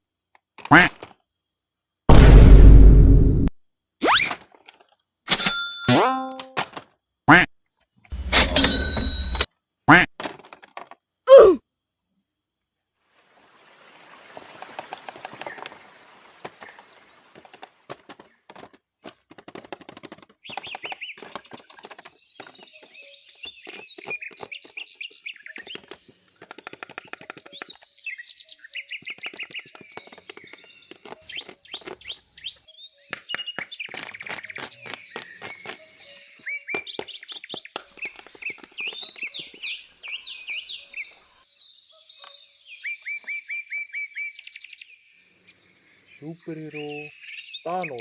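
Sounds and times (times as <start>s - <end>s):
birds chirping and twittering: 13.4s - 48.0s
sharp clicks: 25.6s - 27.9s.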